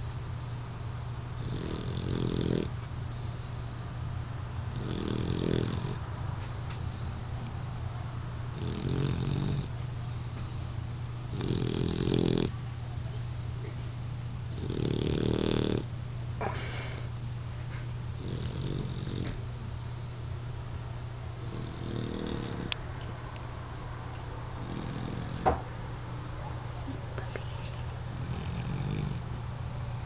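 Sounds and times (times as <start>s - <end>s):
steady low hum: 0.0s - 30.0s
puppy snoring: 1.4s - 2.8s, 4.7s - 6.0s, 8.5s - 9.8s, 11.3s - 12.6s, 14.5s - 17.1s, 18.2s - 19.4s, 21.4s - 22.8s, 24.6s - 25.6s, 28.0s - 29.4s.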